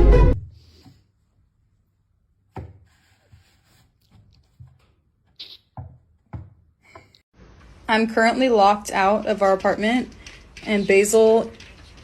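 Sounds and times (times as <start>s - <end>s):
faint knocks and thumps: 5.7s - 7.2s.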